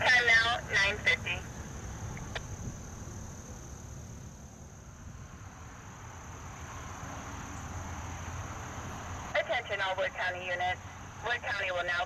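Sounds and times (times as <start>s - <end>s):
high-pitched insect trill: 0.0s - 9.3s.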